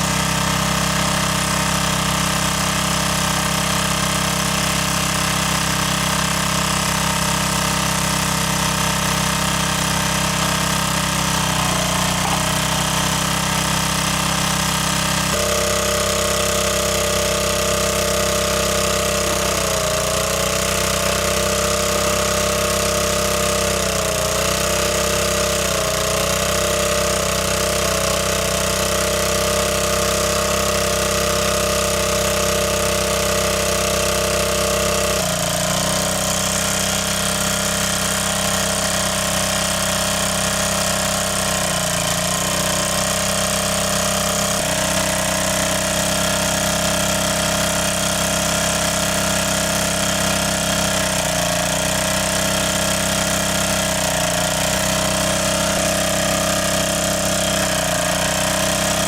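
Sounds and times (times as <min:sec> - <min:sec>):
motor running: 0:00.0 - 0:59.0.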